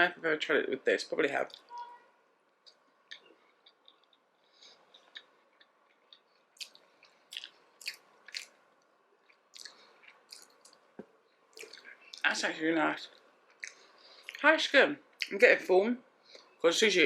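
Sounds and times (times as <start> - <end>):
wet chewing mouth clicks: 2.7 - 8.6, 9.2 - 10.8, 11.5 - 12.2, 13.1 - 14.4.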